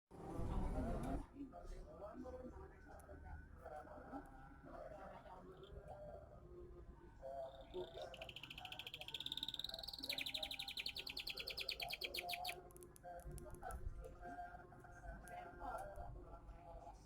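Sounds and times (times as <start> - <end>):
songbird trilling: 7.5 - 12.6.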